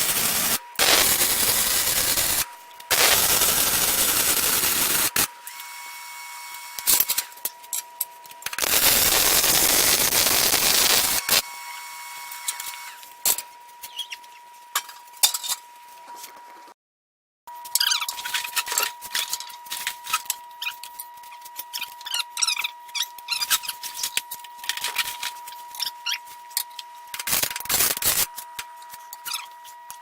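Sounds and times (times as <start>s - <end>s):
welder arc crackling hiss: 0.0s - 5.3s, 8.6s - 11.4s, 27.3s - 28.3s.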